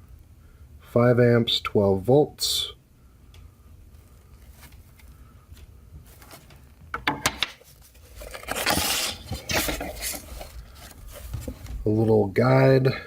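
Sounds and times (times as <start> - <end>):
packaging rustling: 6.0 - 6.9, 7.6 - 11.9.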